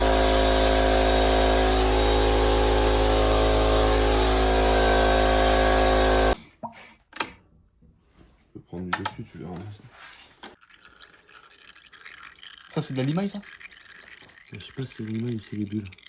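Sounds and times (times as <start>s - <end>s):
motorcycle engine running: 0.0s - 6.4s.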